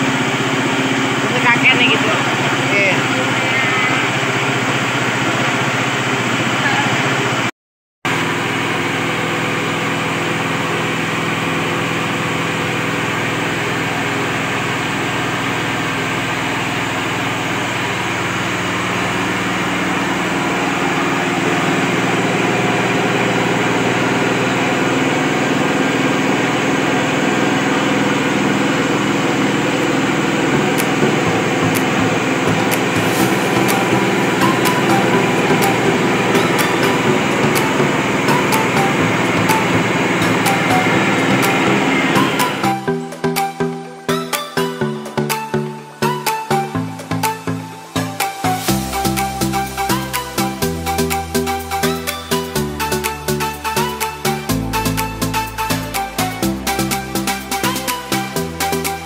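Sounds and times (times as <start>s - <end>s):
grinder motor hum: 0.0s - 7.5s, 8.1s - 43.6s.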